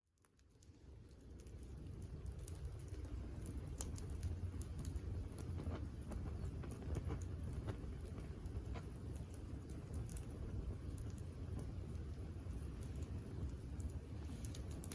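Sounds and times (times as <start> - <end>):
wood fire crackling and popping: 0.0 - 14.9.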